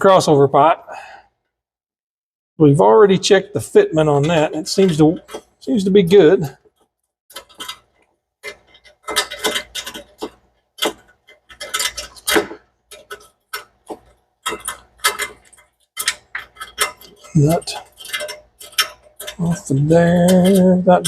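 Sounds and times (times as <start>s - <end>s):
hand ratchet clicking: 7.3s - 21.0s.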